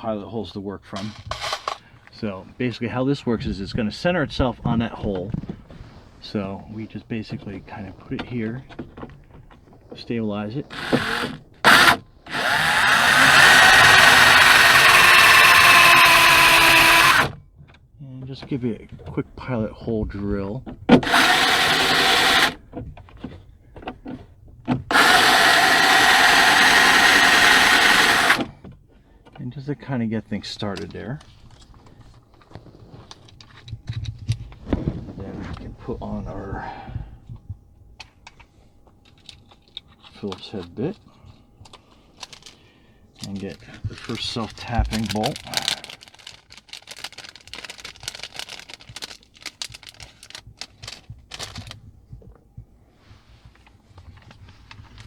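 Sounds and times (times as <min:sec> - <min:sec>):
small hardware clicking and rattling: 0:01.0 - 0:02.1
power drill drilling: 0:10.7 - 0:17.4, 0:21.0 - 0:22.6, 0:24.9 - 0:28.5.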